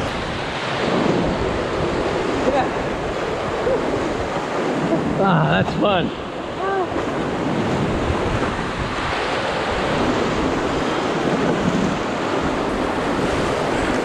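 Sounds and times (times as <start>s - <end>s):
rushing whitewater: 0.0s - 14.0s
wind buffeting microphone: 0.0s - 14.0s.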